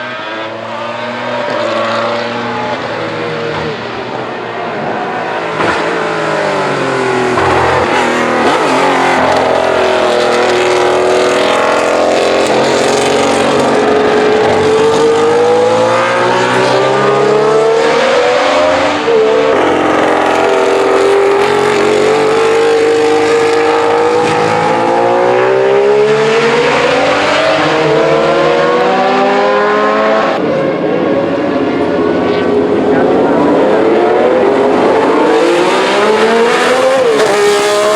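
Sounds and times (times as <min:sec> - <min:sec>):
race car engine revving: 0:00.0 - 0:37.9.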